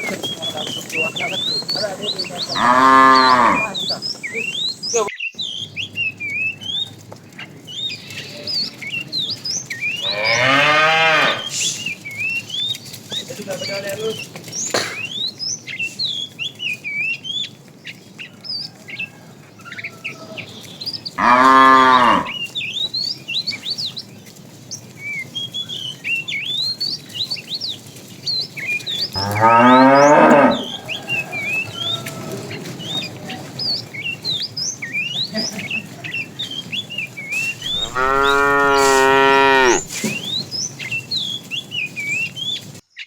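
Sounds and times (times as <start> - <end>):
cows mooing: 0.0 - 5.8, 10.0 - 11.8, 21.1 - 22.5, 29.1 - 34.4, 35.1 - 39.9
small birds chirping: 0.0 - 43.0.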